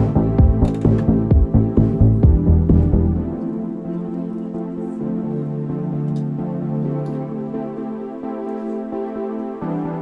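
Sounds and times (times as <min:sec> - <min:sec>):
electronic music with steady beat: 0:00.0 - 0:10.0.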